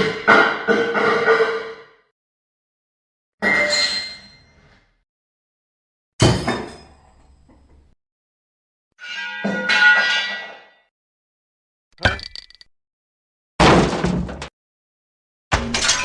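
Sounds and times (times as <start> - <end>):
metal objects dropped on floor: 15.7 - 16.0.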